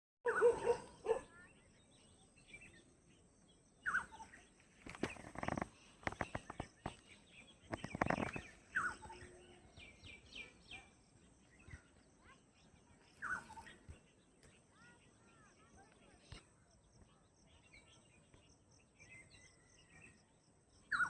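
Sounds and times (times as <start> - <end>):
birds calling: 0.2 - 20.1, 20.8 - 21.0
high bird chirps: 0.3 - 18.4, 20.8 - 21.0
sharp clicks and knocks: 4.8 - 7.0, 7.7 - 8.6.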